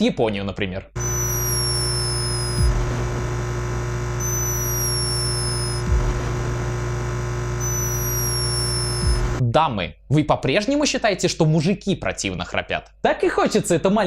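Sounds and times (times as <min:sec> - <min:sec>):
hummingbird high whistle: 0:01.0 - 0:02.7, 0:04.2 - 0:05.8, 0:07.6 - 0:09.2
microphone hum: 0:01.0 - 0:09.4.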